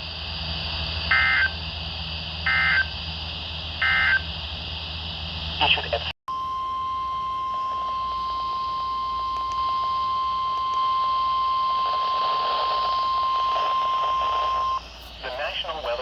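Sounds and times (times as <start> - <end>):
steady high alarm beep: 1.1 - 1.6, 2.4 - 3.0, 3.8 - 4.3, 6.3 - 15.0
radio hiss: 5.3 - 6.2, 7.3 - 16.0.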